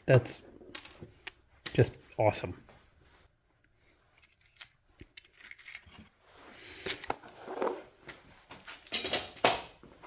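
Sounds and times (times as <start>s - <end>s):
small parts and tools rattling: 4.1s - 6.2s, 8.7s - 9.8s.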